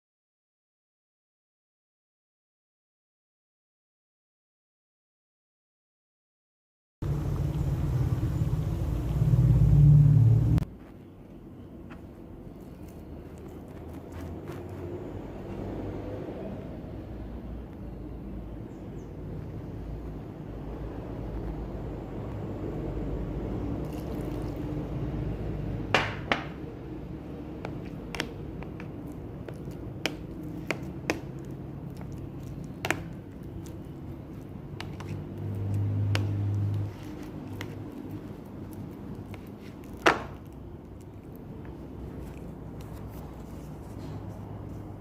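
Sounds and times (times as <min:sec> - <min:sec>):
low hum: 0:07.0 - 0:14.0.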